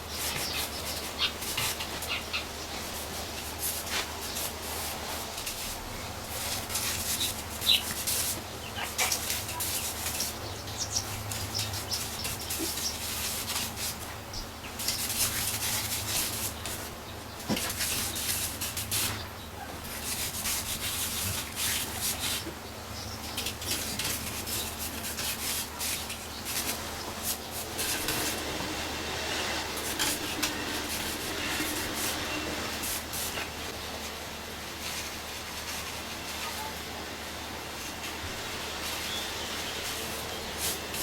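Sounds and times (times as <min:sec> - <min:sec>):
drum sander rasping on log: 0:23.4 - 0:33.7.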